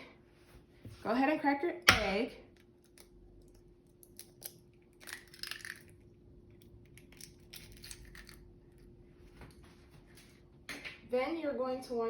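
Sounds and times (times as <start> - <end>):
eggshell cracking: 2.6 - 8.6.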